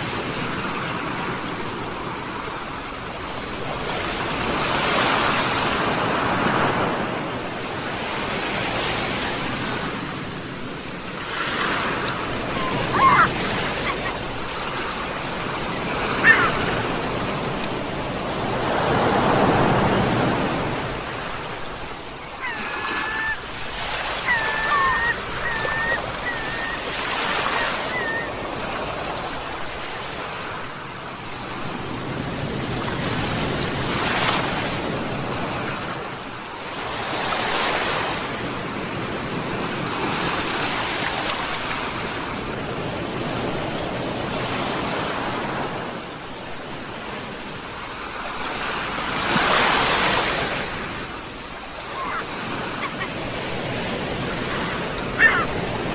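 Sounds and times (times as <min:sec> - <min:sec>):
ocean waves breaking on shore: 0:00.0 - 0:55.9
gull calling: 0:12.1 - 0:17.0, 0:22.2 - 0:28.8, 0:51.8 - 0:53.3, 0:54.4 - 0:55.7.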